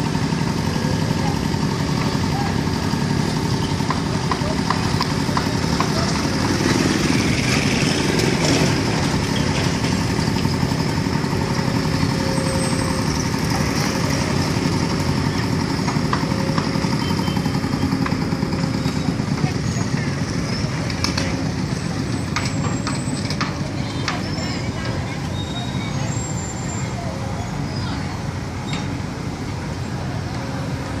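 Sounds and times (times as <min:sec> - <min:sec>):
vehicle and machinery engines: 0:00.0 - 0:31.0.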